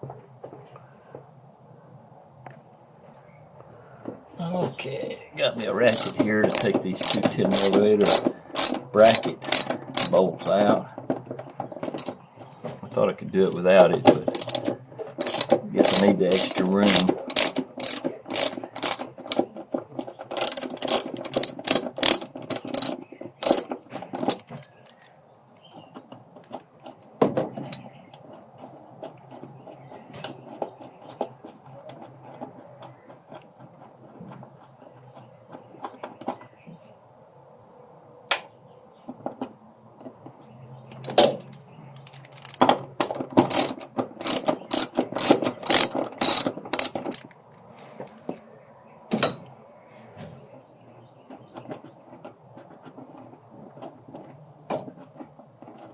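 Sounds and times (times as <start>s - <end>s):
ratchet wrench clicking: 5.9s - 10.6s, 11.9s - 12.2s, 14.3s - 19.4s, 20.3s - 23.7s, 42.3s - 42.6s, 43.5s - 47.3s.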